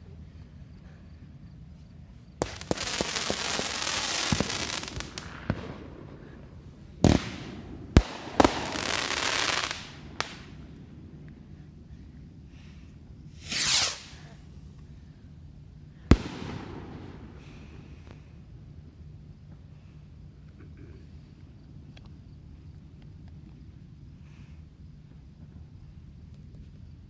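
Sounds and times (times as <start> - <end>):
crackling hiss of firework stars: 0.0 - 27.0
firework bangs: 2.4 - 11.4, 13.4 - 14.3, 16.1 - 18.1.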